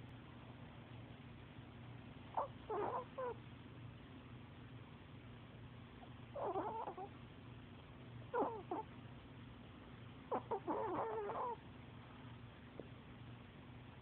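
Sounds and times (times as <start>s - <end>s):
small dog snoring: 2.3s - 3.4s, 6.3s - 7.1s, 8.3s - 8.9s, 10.3s - 11.6s.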